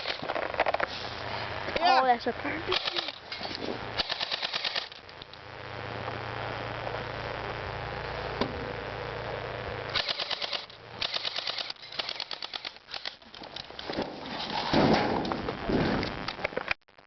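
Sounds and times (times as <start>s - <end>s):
low rush of noise: 0.0s - 16.7s
airsoft guns firing bursts: 4.0s - 4.9s, 10.0s - 13.2s.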